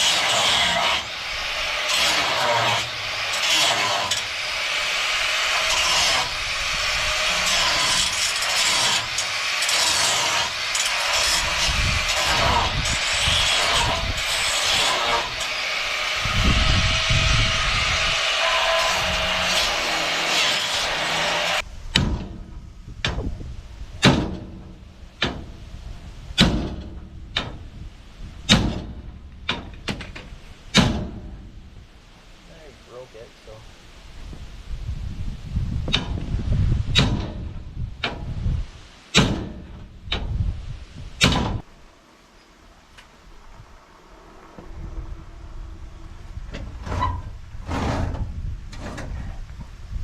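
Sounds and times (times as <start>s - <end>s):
grinder cutoff wheel cutting steel: 0.0s - 21.6s.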